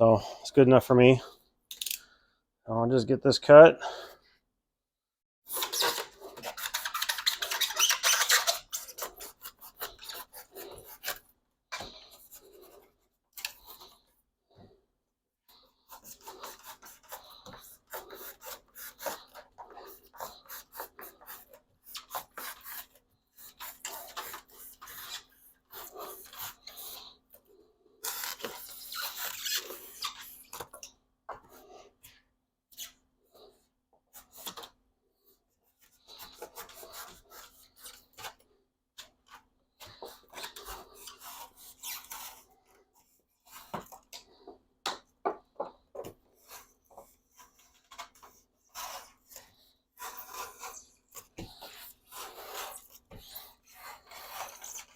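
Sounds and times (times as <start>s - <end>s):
razor blade cutting foam: 5.5s - 14.0s, 15.7s - 27.2s, 28.0s - 30.9s, 35.8s - 38.4s, 39.3s - 42.8s, 46.3s - 54.9s.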